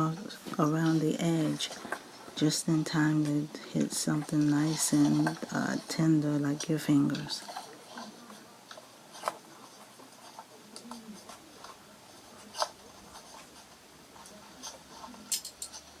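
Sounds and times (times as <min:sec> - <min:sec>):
paper and cardboard scraping: 0:03.8 - 0:15.2.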